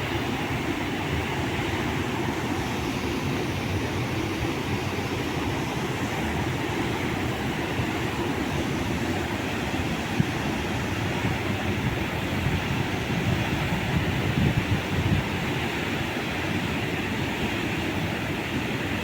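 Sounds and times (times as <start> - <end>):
fast-flowing water: 0.0 - 19.0
wind buffeting microphone: 5.8 - 16.2.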